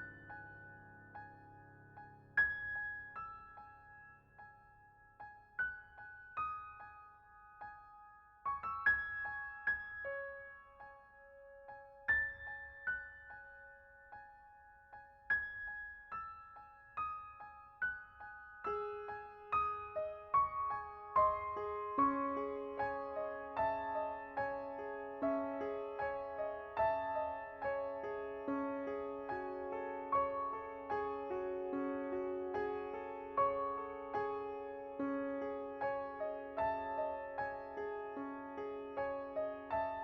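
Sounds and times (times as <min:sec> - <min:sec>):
gentle piano melody: 0:00.0 - 0:40.0.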